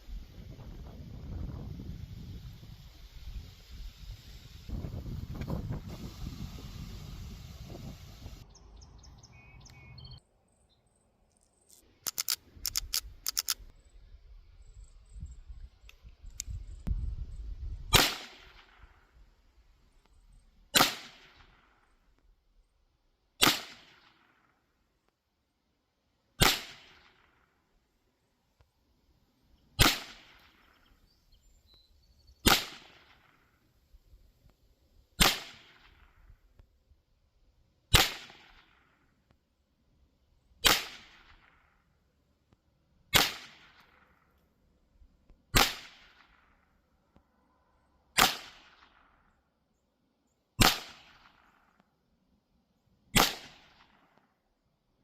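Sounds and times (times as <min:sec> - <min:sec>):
air pistol shots: 0:17.9 - 0:18.8, 0:20.7 - 0:21.4, 0:23.4 - 0:24.1, 0:26.4 - 0:27.3, 0:29.8 - 0:30.6, 0:32.4 - 0:33.4, 0:35.2 - 0:36.0, 0:37.9 - 0:38.8, 0:40.6 - 0:41.5, 0:43.1 - 0:44.0, 0:45.6 - 0:46.4, 0:48.2 - 0:48.9, 0:50.6 - 0:51.5, 0:53.2 - 0:54.0.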